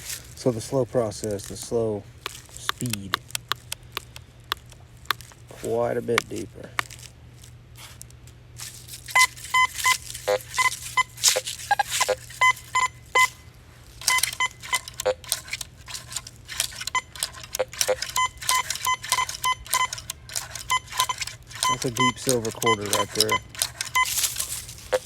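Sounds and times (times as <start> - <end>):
short crackles: 0.0 - 12.8
metal detector beeps: 9.1 - 25.0.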